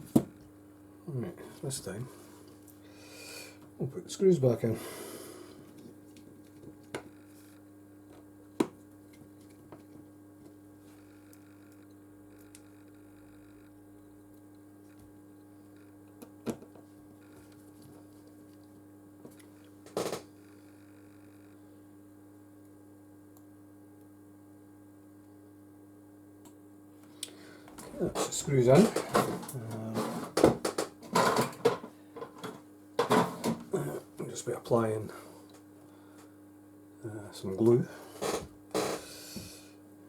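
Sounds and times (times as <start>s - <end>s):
low electrical hum: 0.0s - 40.0s.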